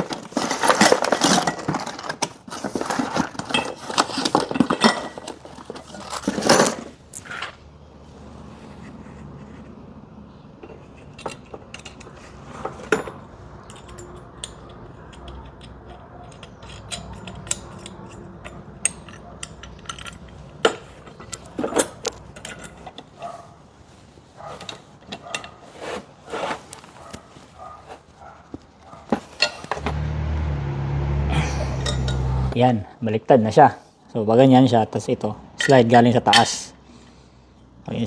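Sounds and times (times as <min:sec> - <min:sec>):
hand tools and bolts clinking: 0:00.0 - 0:07.6, 0:10.6 - 0:23.4, 0:24.4 - 0:30.0, 0:31.3 - 0:32.6.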